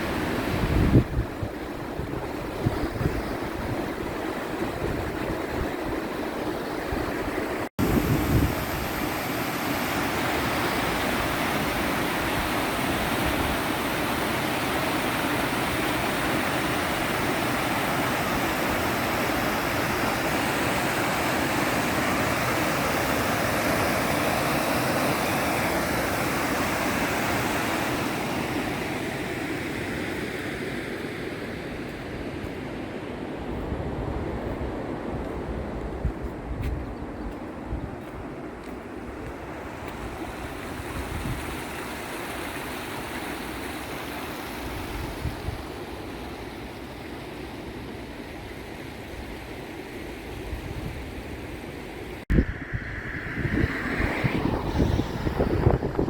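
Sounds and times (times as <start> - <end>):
wind buffeting microphone: 0.5 - 9.2, 33.4 - 41.6, 52.2 - 56.0
flowing water rushing: 2.4 - 31.0, 39.2 - 46.4.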